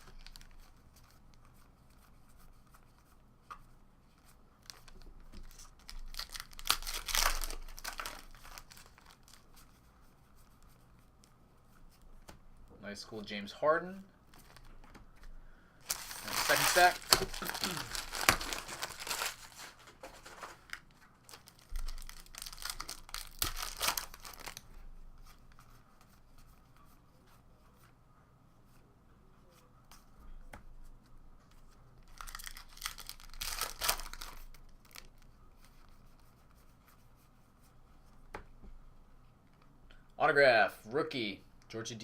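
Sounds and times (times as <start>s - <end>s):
foil wrappers tearing and crinkling: 4.6s - 9.4s, 15.8s - 24.6s, 32.1s - 35.1s.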